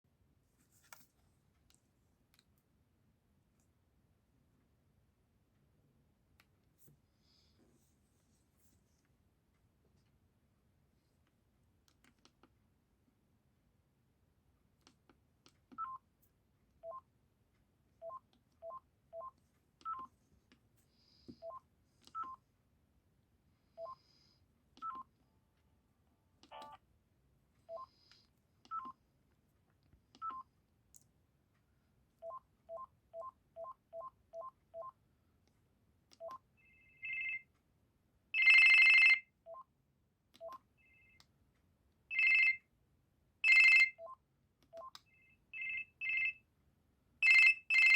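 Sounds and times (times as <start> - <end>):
phone ringtone bursts: 38.4 - 39.2, 43.4 - 44.0, 45.6 - 46.4, 47.2 - 47.9
phone key beeps: 43.4 - 46.3.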